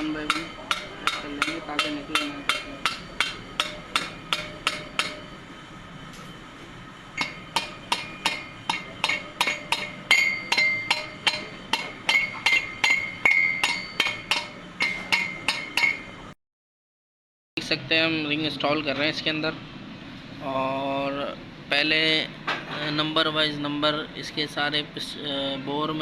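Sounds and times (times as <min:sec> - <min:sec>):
hammer tapping on metal: 0:00.0 - 0:05.3, 0:07.2 - 0:16.2.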